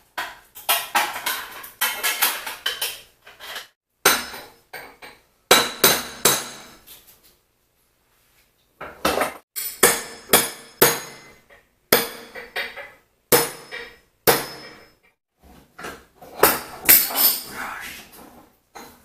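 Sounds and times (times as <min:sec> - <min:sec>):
hammer striking steel punch: 0:09.6 - 0:12.6, 0:13.3 - 0:15.0.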